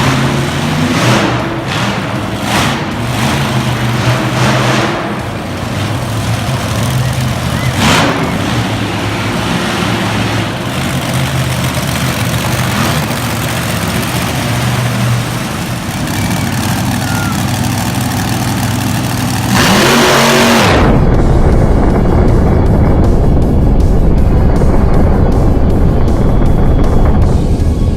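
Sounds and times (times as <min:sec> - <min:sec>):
truck engine droning and revving: 0:00.0 - 0:27.9
loud dull sound: 0:19.5 - 0:27.9.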